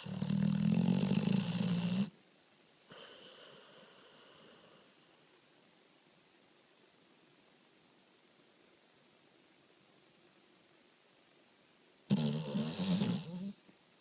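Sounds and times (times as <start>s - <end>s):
dog snoring: 0.0s - 2.1s, 12.1s - 13.6s.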